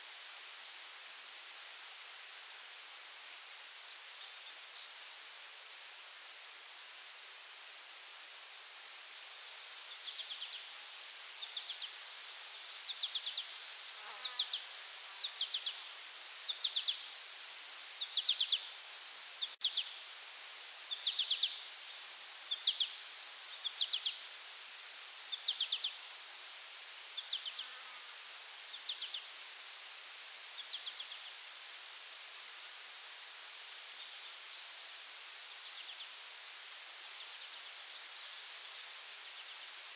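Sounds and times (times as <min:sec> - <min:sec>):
chirping insect: 0:00.7 - 0:39.9.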